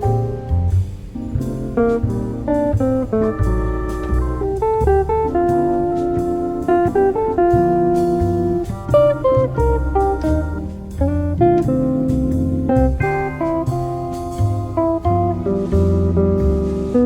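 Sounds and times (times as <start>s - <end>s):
bass line: 0.0s - 17.0s
light drums: 0.0s - 17.0s
plucked guitar melody: 0.0s - 17.0s.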